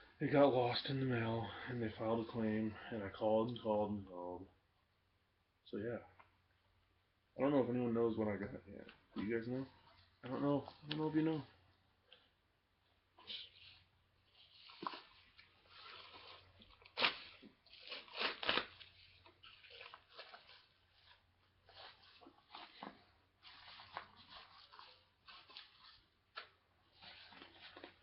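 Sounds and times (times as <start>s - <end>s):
packaging crinkling and tearing: 14.4s - 28.0s.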